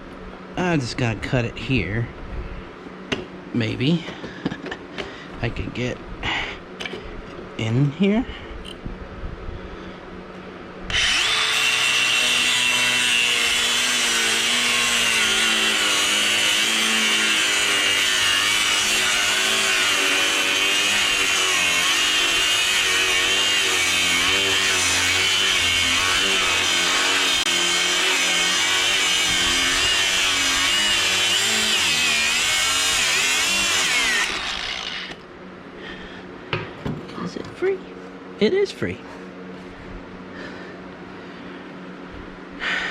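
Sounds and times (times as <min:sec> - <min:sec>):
power tool cutting steel tube: 0:10.9 - 0:35.2.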